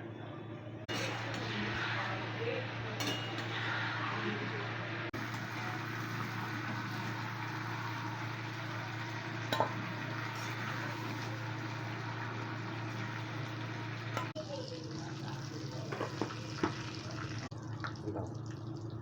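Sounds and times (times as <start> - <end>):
low hum: 0.9 - 14.4
food sizzling in oil: 0.9 - 18.0.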